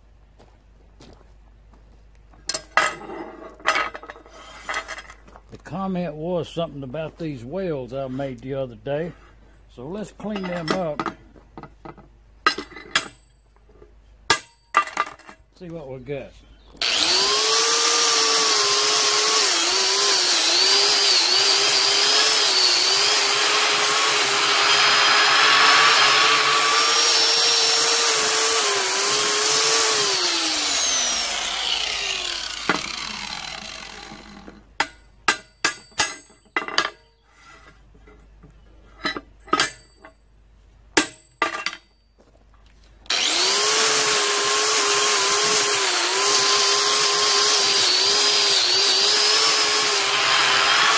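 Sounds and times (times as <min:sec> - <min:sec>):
wire brush grinder scrubbing steel: 0:16.8 - 0:34.6, 0:43.1 - 0:50.9.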